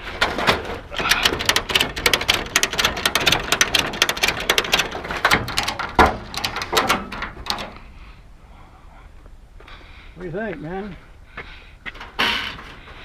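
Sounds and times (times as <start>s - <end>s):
rapid clicking and rattling: 0.0s - 7.8s.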